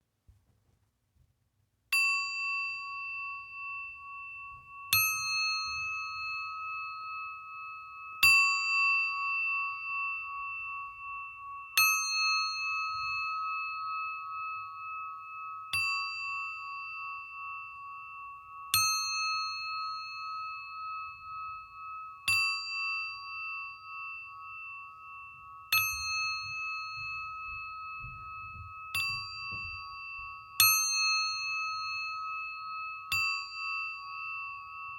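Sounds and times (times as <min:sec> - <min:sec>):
singing bowl struck with mallet: 0:11.8 - 0:34.9.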